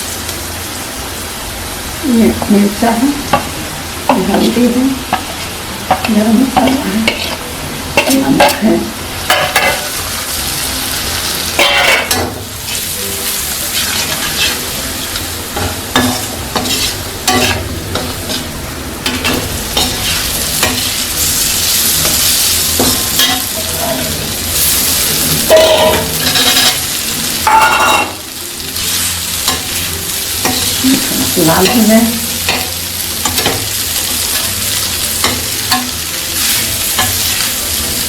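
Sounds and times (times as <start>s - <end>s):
onion sizzling in oil: 0.0s - 38.0s
spatula scraping pan: 13.6s - 23.4s.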